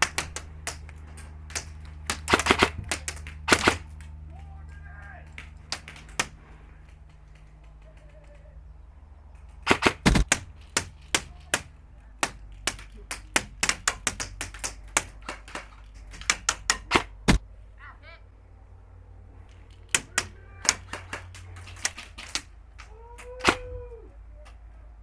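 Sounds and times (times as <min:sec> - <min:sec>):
airsoft rifle shots: 0:00.0 - 0:04.4, 0:05.0 - 0:08.6, 0:09.6 - 0:17.4, 0:19.5 - 0:22.5, 0:23.3 - 0:23.9.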